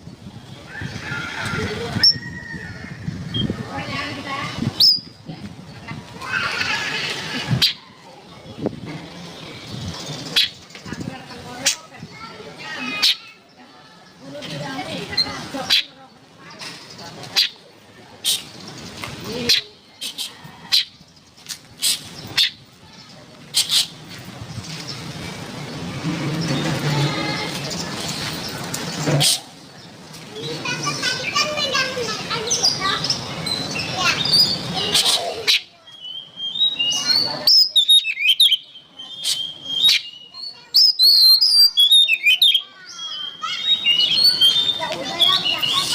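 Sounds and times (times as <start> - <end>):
bird singing whistled notes: 4.8 - 5.1, 35.5 - 45.9.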